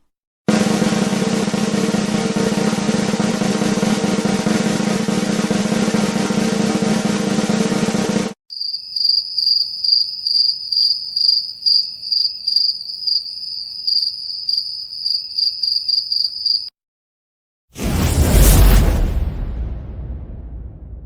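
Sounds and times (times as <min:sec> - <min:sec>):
cricket chirping: 0:08.5 - 0:16.7.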